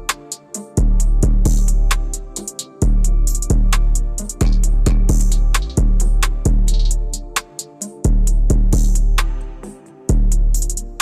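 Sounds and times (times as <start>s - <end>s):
electronic beat with heavy kick drum: 0.0s - 11.0s
hi-hat ticks: 0.0s - 11.0s
sustained synth chords: 0.7s - 7.4s
deep bass: 0.8s - 2.2s, 2.8s - 7.1s, 8.1s - 9.2s.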